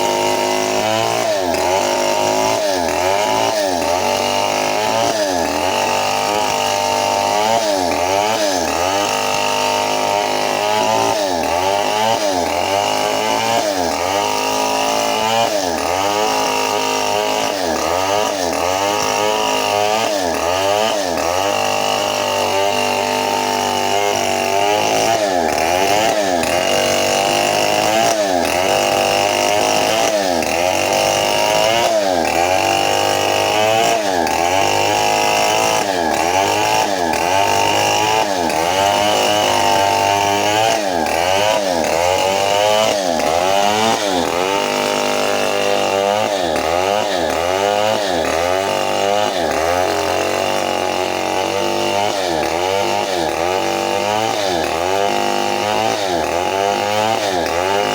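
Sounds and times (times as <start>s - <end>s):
chainsaw cutting wood: 0.0s - 57.9s.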